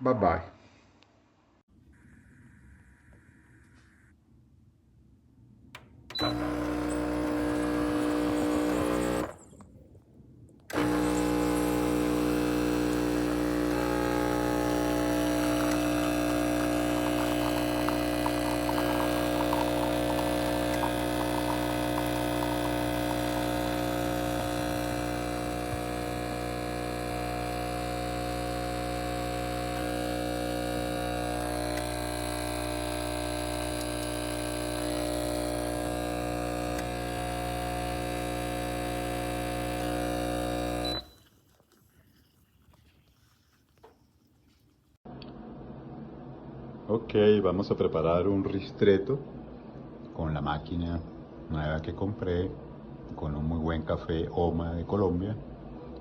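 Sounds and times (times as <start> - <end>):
espresso machine pump humming: 6.1 - 9.4, 10.7 - 41.2.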